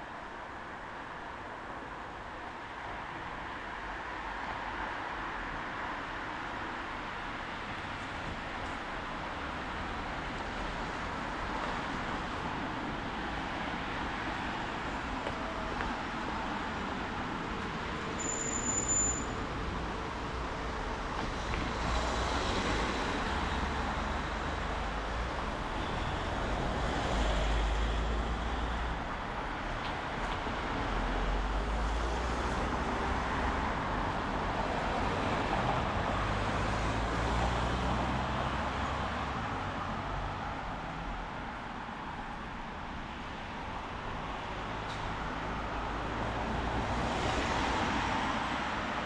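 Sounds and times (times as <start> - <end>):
vehicles passing: 26.3 - 49.0.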